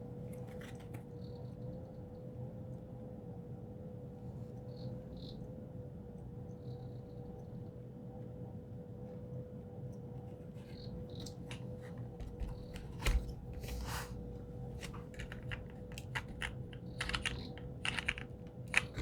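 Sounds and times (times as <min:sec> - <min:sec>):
faint steady hum: 0:00.0 - 0:19.0
mechanical keyboard keystroke clacks: 0:14.8 - 0:19.0.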